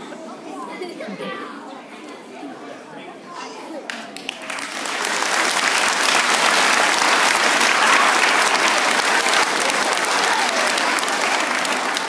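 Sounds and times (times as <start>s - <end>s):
children applauding: 4.2s - 12.0s.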